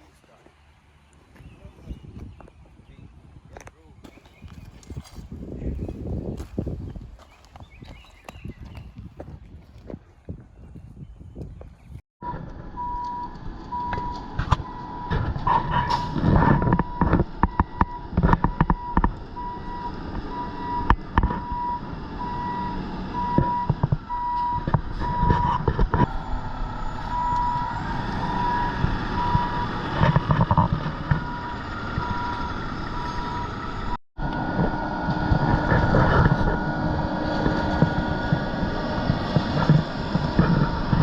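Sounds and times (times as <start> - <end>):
reversing alarm beeping: 12.2 - 34.0
truck engine running: 12.2 - 41.0.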